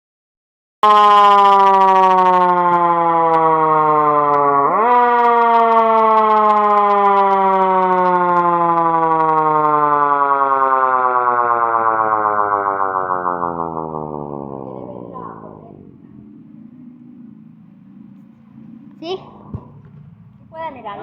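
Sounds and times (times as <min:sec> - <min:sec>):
mechanical wind siren winding: 0:04.4 - 0:10.1.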